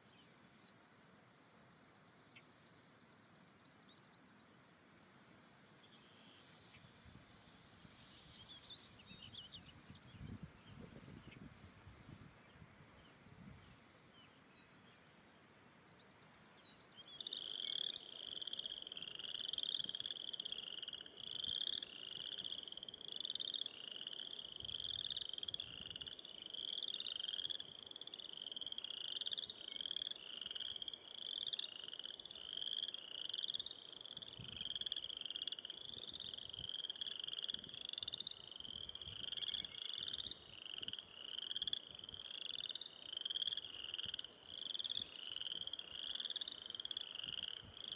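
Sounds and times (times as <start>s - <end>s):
frog trilling: 17.2s - 47.9s.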